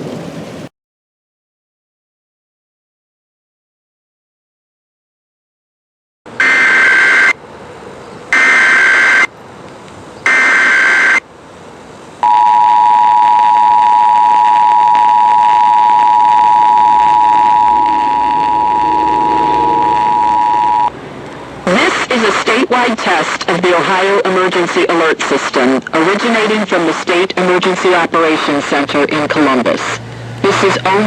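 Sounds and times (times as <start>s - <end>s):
digital data tone bursts: 6.4s - 7.4s, 8.3s - 9.3s, 10.3s - 11.2s, 12.2s - 21.0s
two-tone attention signal: 6.4s - 7.4s, 8.4s - 9.3s, 10.3s - 11.2s, 12.2s - 21.0s.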